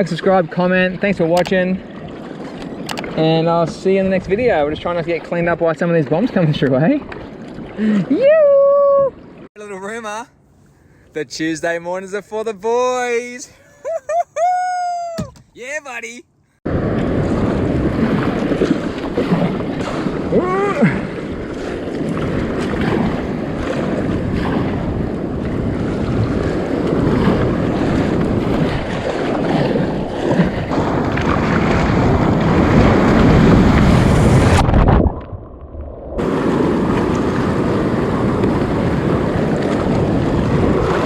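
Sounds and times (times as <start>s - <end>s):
wind buffeting microphone: 0.8s - 9.5s, 16.7s - 41.0s
breaking surf: 15.6s - 41.0s.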